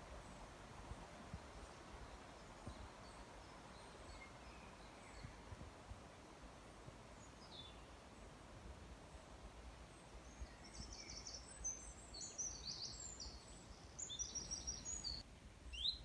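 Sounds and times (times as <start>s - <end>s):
steady low hiss: 0.0s - 16.0s
distant bird chirps: 10.3s - 16.0s.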